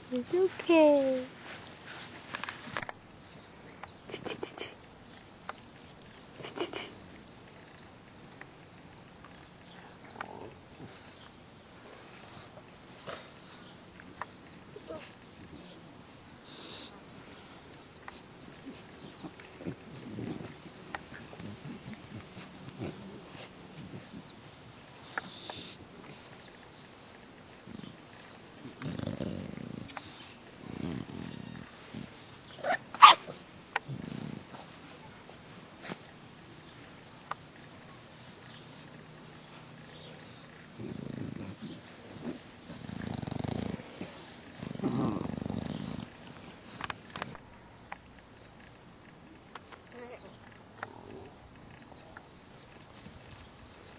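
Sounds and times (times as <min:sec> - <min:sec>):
puppy breathy sound: 0:06.4 - 0:07.0
puppies grunting and growling: 0:14.5 - 0:24.5, 0:25.1 - 0:37.0, 0:38.2 - 0:47.4
puppy yelps: 0:32.6 - 0:33.4.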